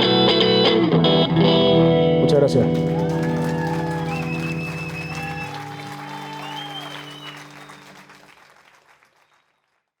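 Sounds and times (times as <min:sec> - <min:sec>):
audience applause: 0:02.8 - 0:10.0
high whistles: 0:03.9 - 0:08.2.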